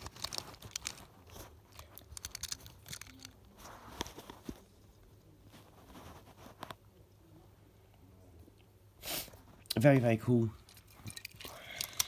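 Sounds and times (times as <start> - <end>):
toy car and packaging handled: 0.0 - 4.8, 10.6 - 12.0.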